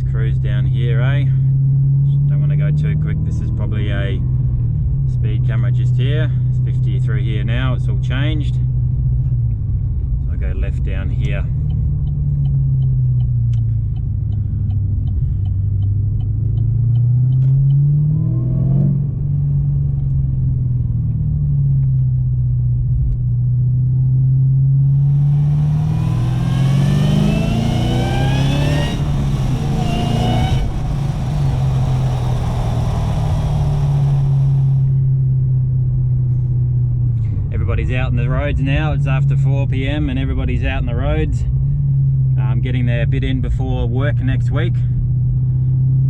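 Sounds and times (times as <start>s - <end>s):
car engine accelerating: 8.7s - 36.2s
turn signal ticking: 11.2s - 18.2s, 24.9s - 34.9s
supercharger whine: 24.8s - 35.3s.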